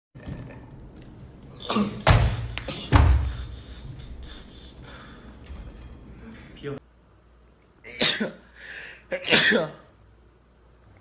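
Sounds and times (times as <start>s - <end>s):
man sneezing: 1.6s - 3.8s, 7.8s - 8.5s, 9.1s - 9.9s.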